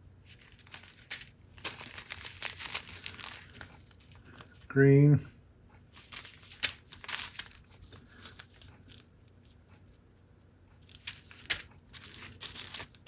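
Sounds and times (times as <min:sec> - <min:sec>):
small plastic bags crinkling: 0:00.2 - 0:04.7, 0:05.9 - 0:09.6, 0:10.8 - 0:13.0.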